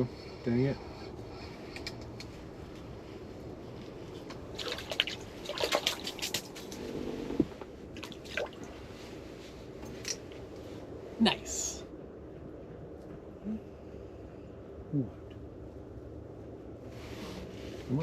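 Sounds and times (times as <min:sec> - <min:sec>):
water splashing and dripping: 0:04.5 - 0:06.8, 0:08.0 - 0:08.7.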